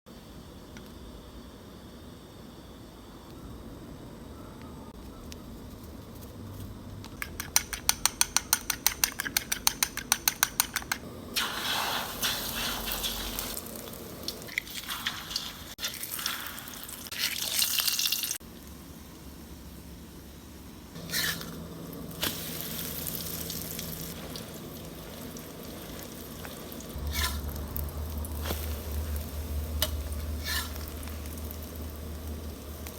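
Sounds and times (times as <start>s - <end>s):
eggs beaten in bowl clinking: 7.0s - 11.0s
egg sizzling in hot oil: 11.4s - 18.4s, 21.0s - 32.9s.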